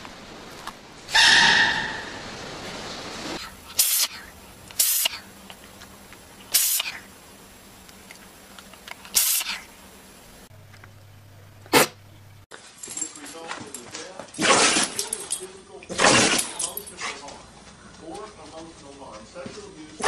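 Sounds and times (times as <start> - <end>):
hissing burst: 1.1 - 5.4, 6.4 - 7.7, 9.0 - 10.2
animal sneezing: 3.4 - 5.3, 6.5 - 7.1, 9.1 - 9.7, 11.7 - 12.0.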